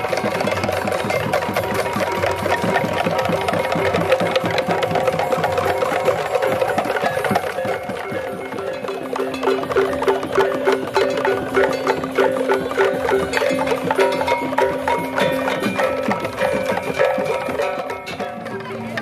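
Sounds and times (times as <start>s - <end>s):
cymbals clashing: 0.0s - 19.0s.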